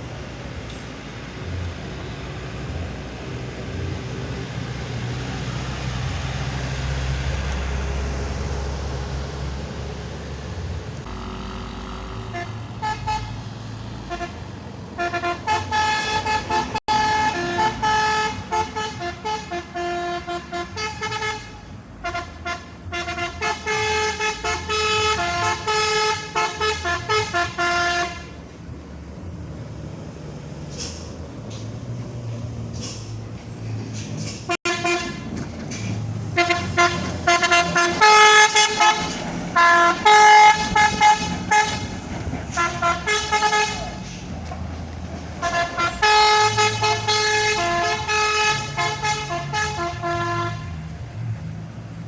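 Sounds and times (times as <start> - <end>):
heavy vehicle engine rumbling: 0.0 - 52.0
musical horn playing a tune: 12.1 - 13.4, 15.0 - 28.4, 34.6 - 35.3, 36.3 - 41.9, 42.5 - 44.1, 45.4 - 50.8.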